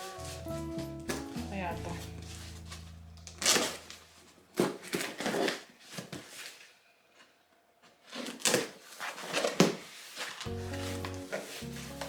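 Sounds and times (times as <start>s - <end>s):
packaging rustling: 2.0s - 6.7s, 8.0s - 12.0s.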